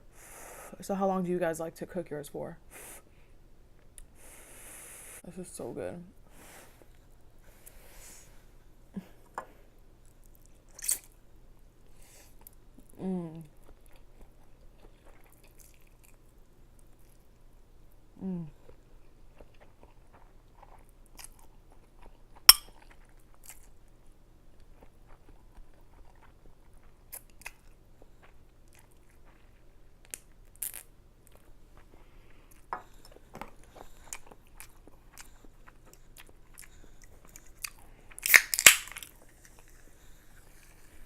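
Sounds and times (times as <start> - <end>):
chewing noodles: 13.5 - 17.3, 18.7 - 23.8, 24.5 - 41.0.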